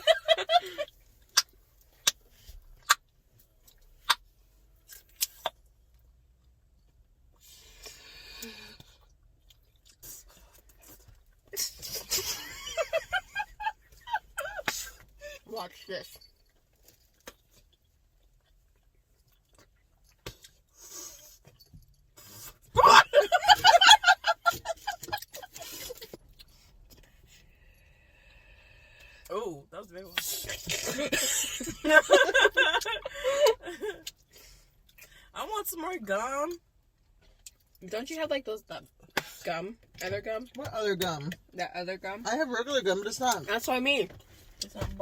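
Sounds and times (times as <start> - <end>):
chewing gum popping: 17.0 - 20.7.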